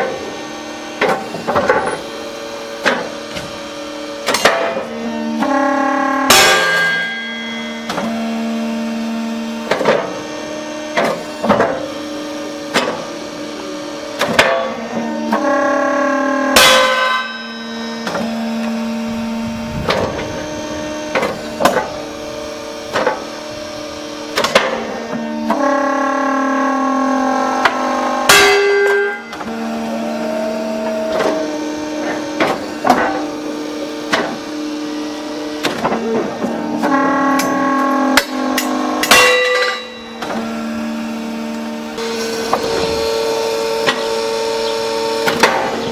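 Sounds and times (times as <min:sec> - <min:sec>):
hydraulic press humming: 0:00.0 - 0:45.9
rail snapping with sharp crack: 0:04.2 - 0:05.6, 0:14.2 - 0:15.5, 0:16.6 - 0:17.4, 0:24.3 - 0:25.7, 0:45.2 - 0:45.8
steel clanks: 0:38.2 - 0:40.6.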